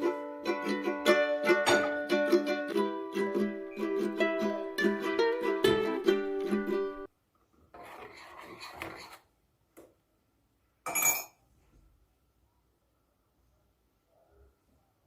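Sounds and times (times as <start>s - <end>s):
plucked-string background music: 0.0s - 7.1s.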